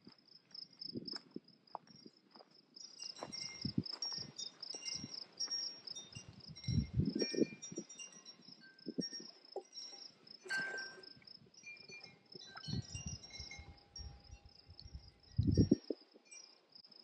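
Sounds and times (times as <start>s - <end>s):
wind buffeting microphone: 3.2s - 9.3s, 12.0s - 16.2s
ringing notes: 10.4s - 14.2s.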